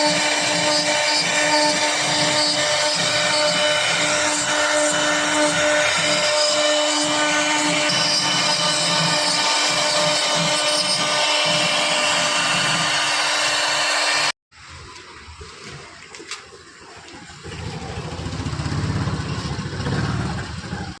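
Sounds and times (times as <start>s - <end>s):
router cutting with whine: 0.0s - 14.4s.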